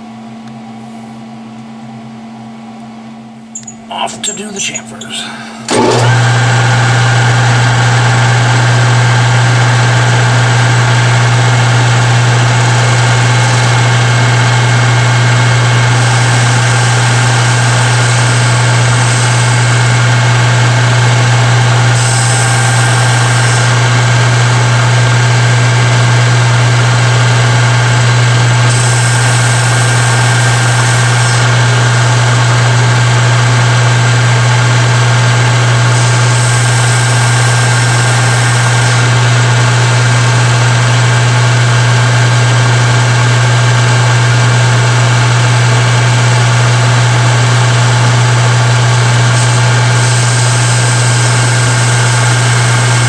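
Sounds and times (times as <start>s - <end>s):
metal lathe humming: 3.6s - 53.0s
lathe tool cutting hiss: 4.4s - 34.0s, 35.5s - 41.0s, 49.0s - 53.0s.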